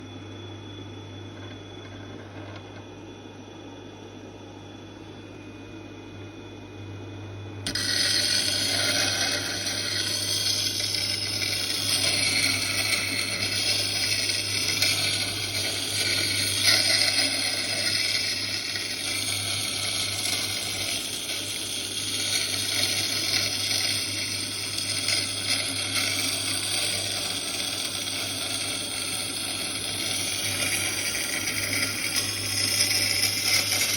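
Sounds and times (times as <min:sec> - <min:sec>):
power grinder humming: 0:07.6 - 0:33.9
rough grinding of metal tube: 0:07.7 - 0:33.9.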